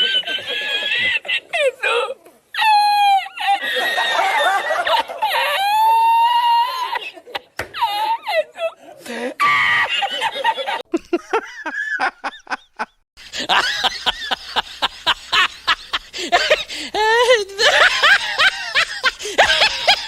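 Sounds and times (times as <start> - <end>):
fast rhythmic laughter: 9.6 - 20.0.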